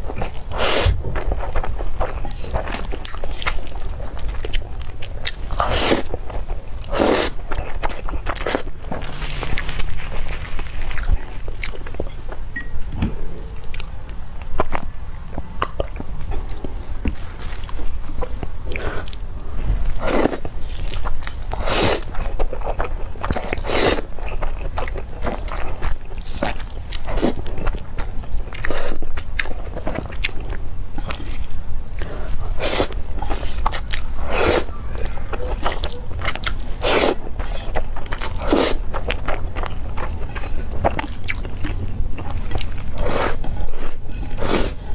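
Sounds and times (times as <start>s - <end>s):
person biting and chewing food: 0.0s - 12.4s.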